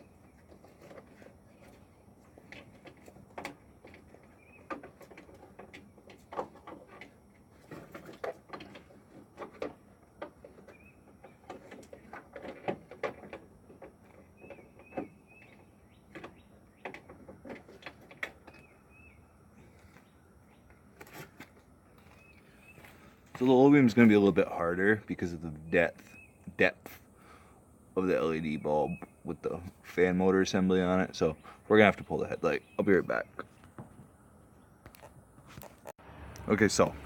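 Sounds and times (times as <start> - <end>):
bird chirping faintly: 13.8 - 35.2.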